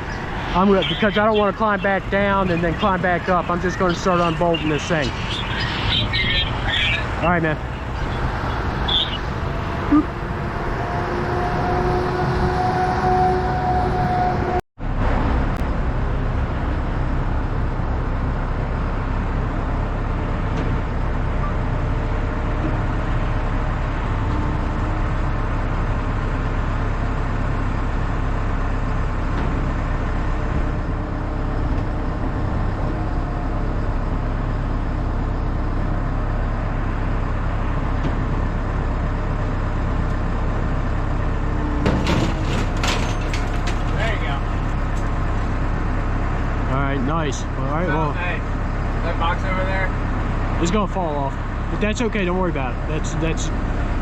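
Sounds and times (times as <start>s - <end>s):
truck engine rumbling: 0.0s - 54.0s
metallic clanks: 41.8s - 45.3s.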